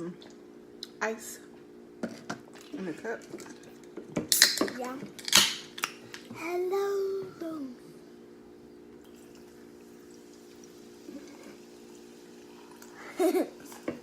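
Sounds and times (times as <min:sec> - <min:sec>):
low steady hum: 0:00.0 - 0:14.0
soda fizzing over ice: 0:09.0 - 0:13.9.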